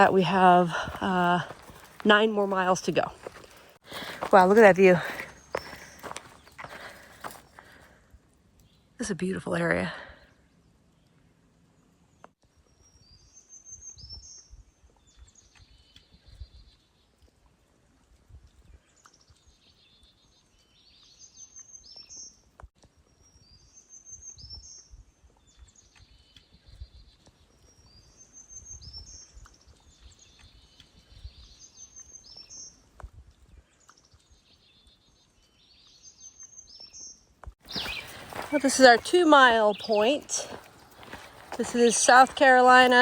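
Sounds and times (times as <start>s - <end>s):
songbird trilling: 37.7s - 43.0s.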